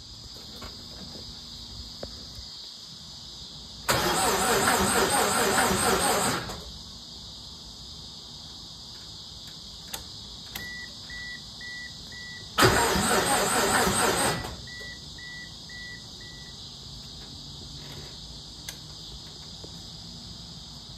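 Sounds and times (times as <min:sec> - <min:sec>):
engine starter cranking: 0:03.9 - 0:06.7, 0:12.6 - 0:14.7.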